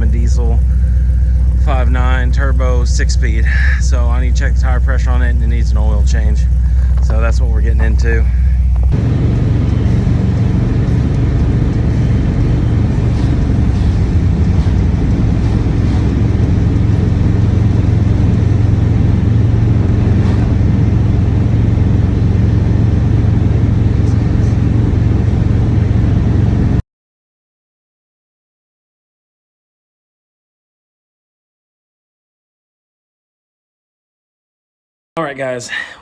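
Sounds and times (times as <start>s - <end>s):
vehicle engine droning: 0.0s - 26.8s.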